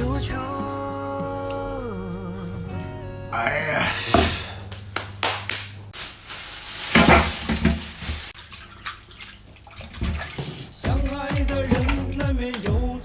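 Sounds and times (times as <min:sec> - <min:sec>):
food sizzling in a hot pan: 0:06.0 - 0:08.4
utensil knocking: 0:10.8 - 0:12.8.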